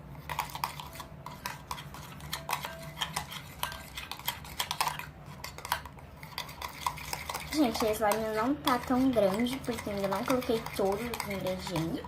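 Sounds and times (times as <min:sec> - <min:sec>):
utensil scraping and clicking in bowl: 0:00.1 - 0:12.0.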